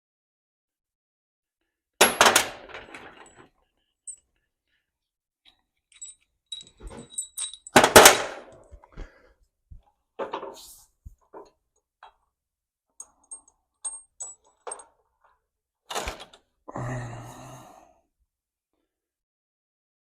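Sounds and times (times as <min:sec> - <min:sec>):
steel nuts and washers clattering: 0:02.0 - 0:04.2, 0:05.8 - 0:08.7, 0:13.0 - 0:15.0.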